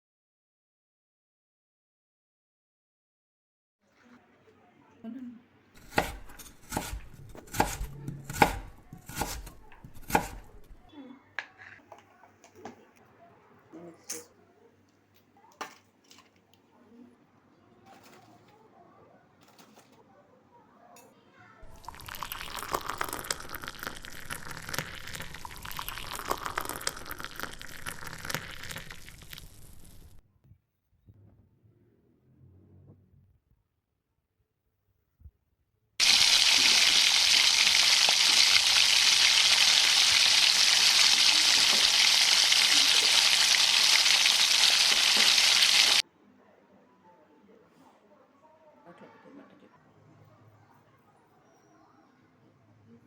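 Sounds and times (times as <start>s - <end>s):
knife chopping on cutting board: 5.8s - 10.7s
food sizzling in hot oil: 21.7s - 30.2s, 36.0s - 46.0s.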